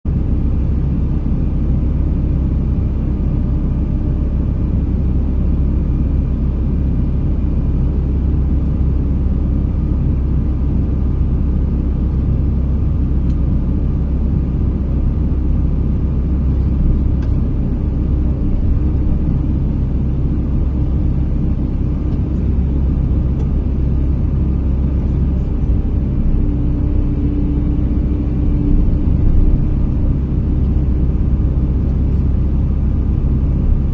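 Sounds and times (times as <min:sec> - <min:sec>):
crane engine low rumble: 0:00.0 - 0:33.9.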